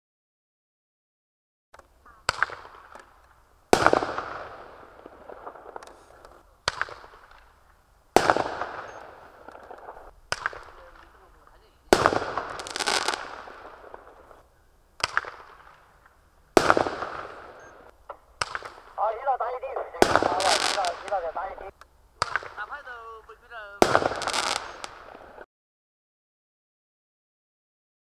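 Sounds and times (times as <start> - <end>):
firework bangs: 2.3 - 14.4, 15.0 - 25.4.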